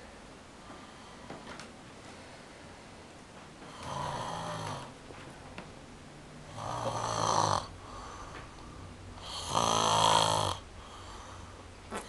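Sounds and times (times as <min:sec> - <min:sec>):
person snoring: 0:03.7 - 0:05.0, 0:06.5 - 0:08.4, 0:09.2 - 0:12.0.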